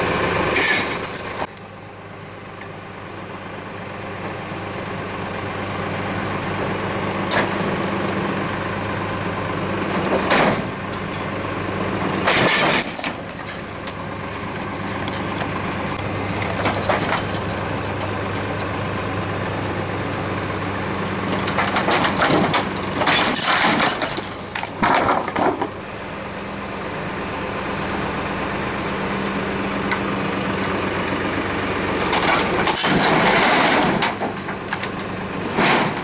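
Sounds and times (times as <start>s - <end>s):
tractor engine running: 0.0s - 36.0s
crashing and rattling: 11.9s - 18.8s, 20.1s - 25.8s, 29.1s - 36.0s.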